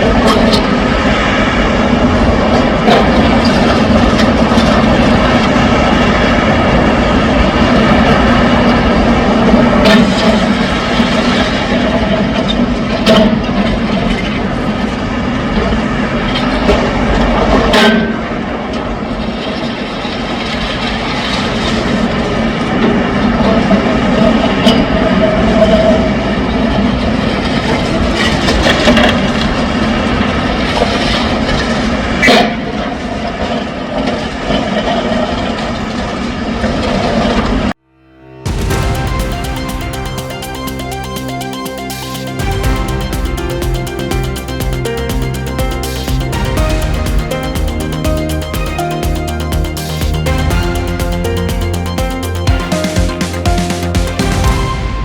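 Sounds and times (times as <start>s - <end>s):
loud bang: 38.0s - 55.0s
heavy machinery humming: 38.2s - 55.0s.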